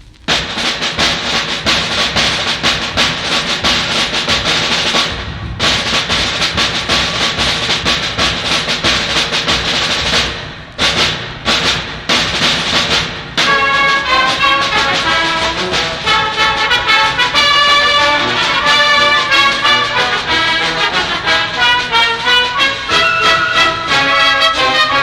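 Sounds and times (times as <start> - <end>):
bass drum: 0.0 - 22.2
rapid snare drum strokes: 0.0 - 25.0.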